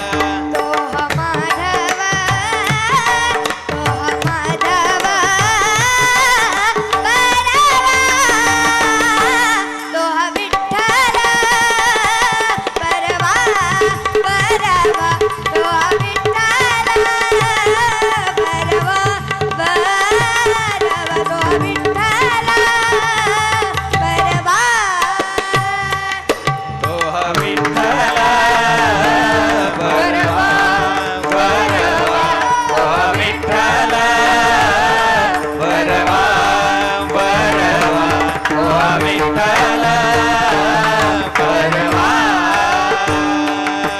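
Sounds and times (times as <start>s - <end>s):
tabla rhythm: 0.0s - 43.9s.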